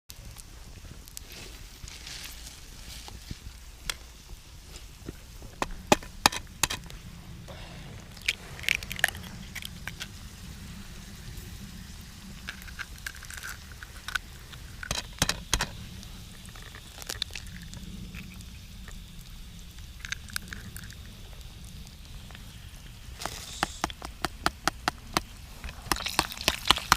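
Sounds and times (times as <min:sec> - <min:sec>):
low rumble: 0:00.2 - 0:23.6
sharp knocks and clicks: 0:05.6 - 0:06.8.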